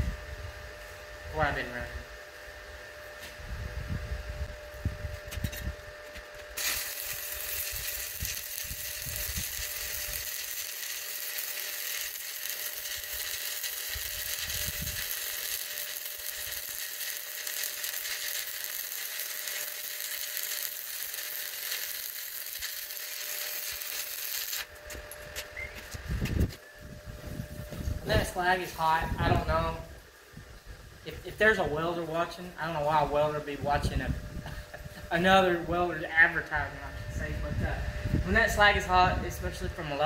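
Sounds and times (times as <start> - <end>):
welding arc crackling: 6.3 - 26.0.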